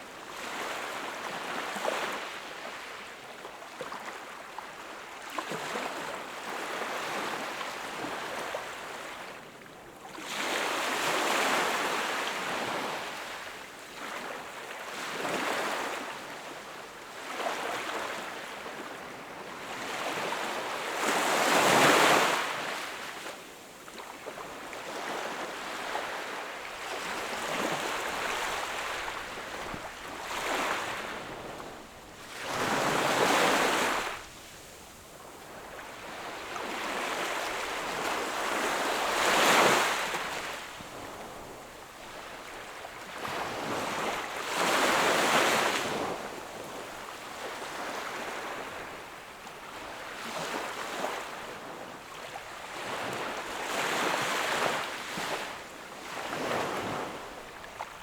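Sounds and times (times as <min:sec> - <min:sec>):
ocean waves breaking on shore: 0:24.0 - 0:46.8.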